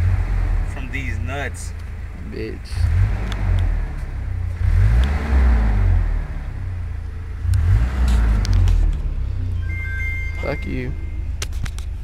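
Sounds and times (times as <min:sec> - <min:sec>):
pickup truck engine revving: 0:00.0 - 0:01.2, 0:02.7 - 0:09.6.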